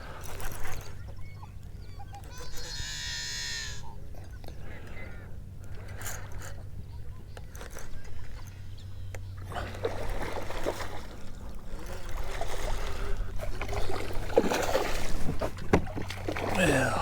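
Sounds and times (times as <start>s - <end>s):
water splashing around a kayak: 9.4s - 17.0s.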